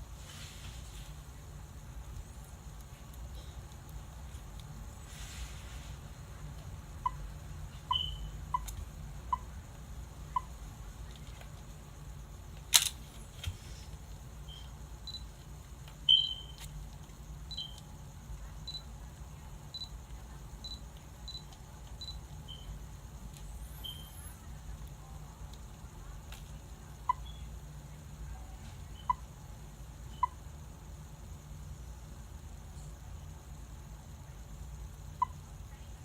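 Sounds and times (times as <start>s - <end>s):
camera electronic beeps: 7.9s - 8.7s, 16.1s - 16.6s
sharp camera click: 12.6s - 13.0s.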